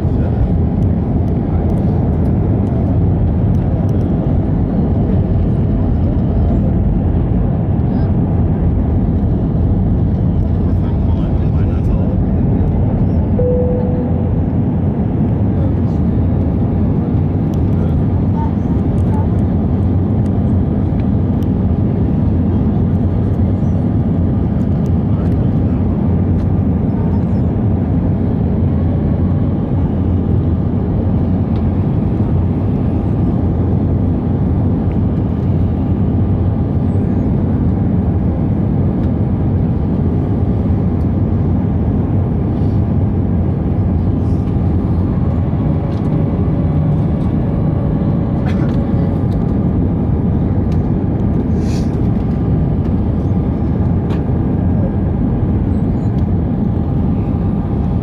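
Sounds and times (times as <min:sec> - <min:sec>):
airliner cabin engine rush: 0:00.0 - 0:58.0
faint steady tones: 0:13.4 - 0:14.4.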